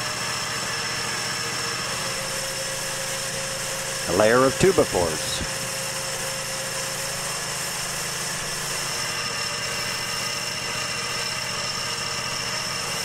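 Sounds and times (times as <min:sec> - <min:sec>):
engine running steadily: 0:00.0 - 0:13.0
thin high whine: 0:01.9 - 0:13.0.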